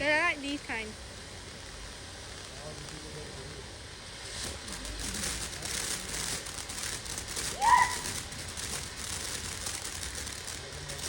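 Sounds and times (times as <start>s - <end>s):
firework fizzing and crackling: 0.0s - 11.0s
firework high squeal: 4.2s - 11.0s.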